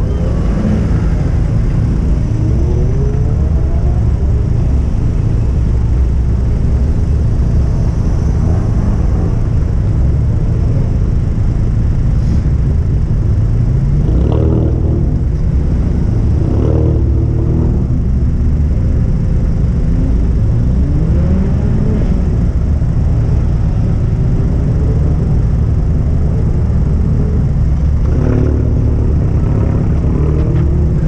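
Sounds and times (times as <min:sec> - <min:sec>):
car engine and road noise: 0:00.0 - 0:31.0
engine revving: 0:24.6 - 0:31.0.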